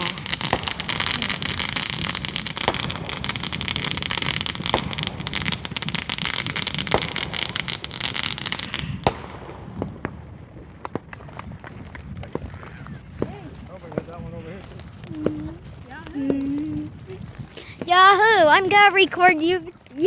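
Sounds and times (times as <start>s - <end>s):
fireworks crackling and popping: 0.0s - 20.0s.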